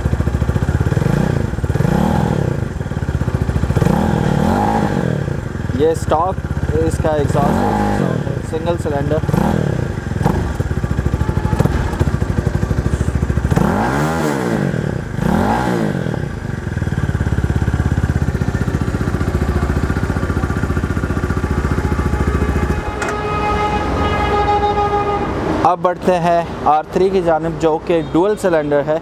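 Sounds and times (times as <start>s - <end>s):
motorcycle engine idling and revving: 0.0s - 29.0s
steady pitched tone: 9.2s - 13.9s, 18.6s - 25.8s.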